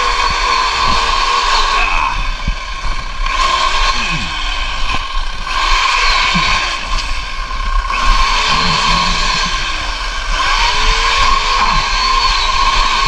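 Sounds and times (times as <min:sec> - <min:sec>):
chainsaw cutting with high whine: 0:00.0 - 0:13.0.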